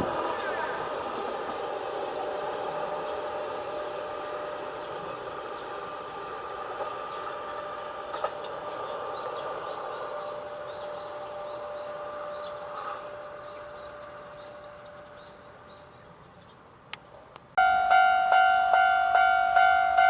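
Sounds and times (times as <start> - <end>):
level crossing alarm dinging: 17.6 - 20.0
steady tone: 17.6 - 20.0.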